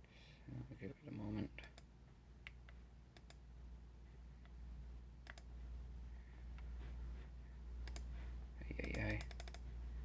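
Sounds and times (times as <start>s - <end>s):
low steady hum: 0.0s - 10.0s
computer key clicks: 1.7s - 3.4s, 5.2s - 5.5s, 7.8s - 8.1s, 8.8s - 9.6s.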